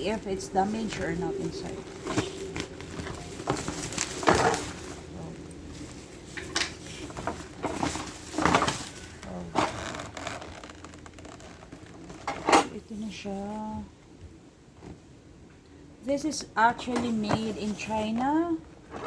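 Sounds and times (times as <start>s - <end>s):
packaging rustling and scraping: 0.0s - 12.6s
faint steady hum: 0.0s - 19.0s.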